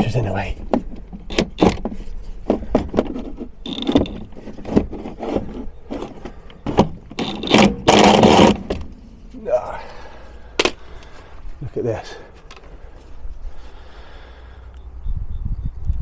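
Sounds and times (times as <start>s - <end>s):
loud scraping rustle: 1.2s - 9.4s
hand tools clinking: 3.7s - 4.5s.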